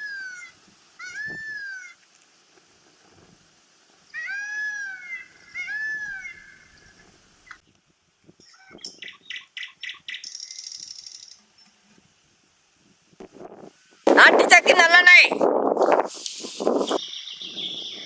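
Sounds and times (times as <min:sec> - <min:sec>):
animal crying out: 0:00.0 - 0:02.0, 0:04.2 - 0:06.7.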